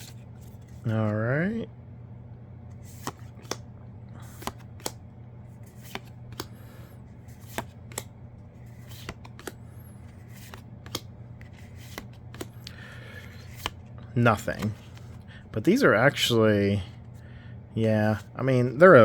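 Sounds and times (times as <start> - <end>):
low steady hum: 0.0 - 19.0
cards snapping: 2.8 - 5.0, 5.6 - 6.7, 7.3 - 13.8.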